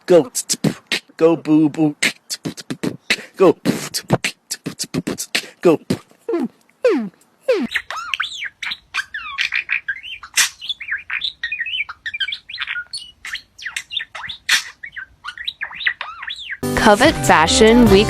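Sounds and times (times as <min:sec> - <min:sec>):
birds chirping and twittering: 0:07.6 - 0:16.6.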